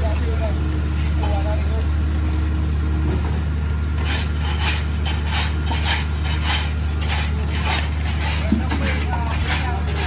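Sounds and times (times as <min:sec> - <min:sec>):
diesel engine humming: 0:00.0 - 0:10.0
rhythmic scraping: 0:04.0 - 0:10.0.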